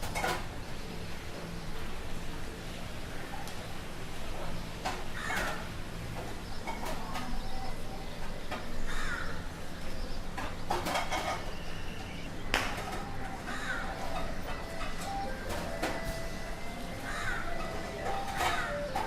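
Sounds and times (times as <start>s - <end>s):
crows cawing: 5.1s - 5.7s, 8.8s - 9.5s, 13.3s - 14.3s, 17.0s - 19.0s.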